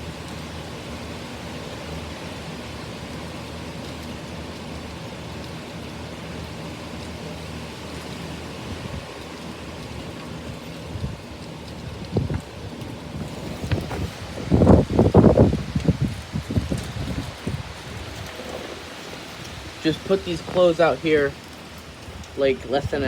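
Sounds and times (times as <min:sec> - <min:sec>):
heavy rain pouring: 0:00.0 - 0:23.0
wind buffeting microphone: 0:08.2 - 0:23.0.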